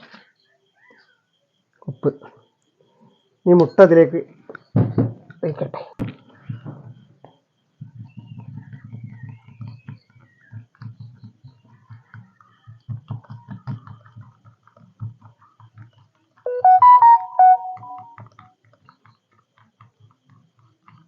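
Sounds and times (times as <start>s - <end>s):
electronic keyboard melody: 16.5s - 18.2s.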